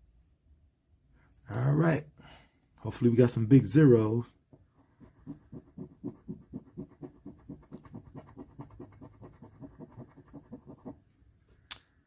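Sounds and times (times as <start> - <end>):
scratch-off ticket being scratched: 4.9 - 11.0.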